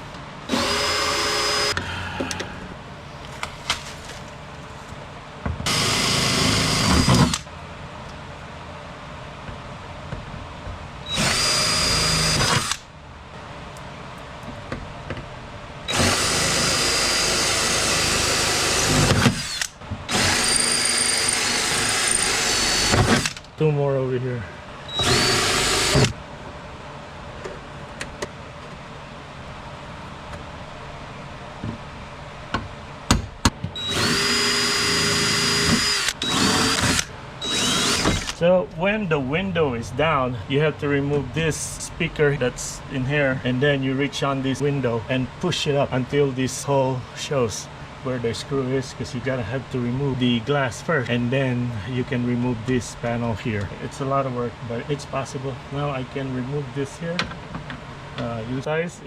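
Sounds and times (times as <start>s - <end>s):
power drill drilling rivets: 5.7s - 7.5s, 11.2s - 12.8s, 15.9s - 23.5s, 33.8s - 38.4s.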